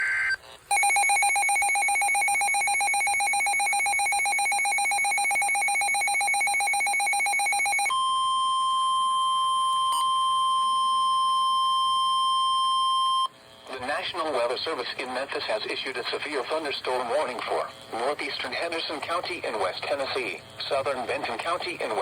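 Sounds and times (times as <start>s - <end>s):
steady pure alarm tone: 0.0s - 13.4s.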